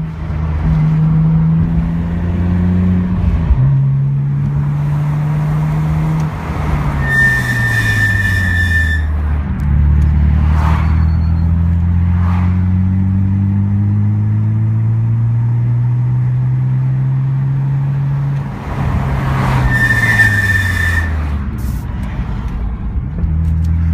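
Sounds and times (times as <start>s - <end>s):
car engine accelerating: 0.0s - 23.9s
brake squeal: 6.7s - 9.2s, 10.6s - 11.8s, 19.4s - 21.9s.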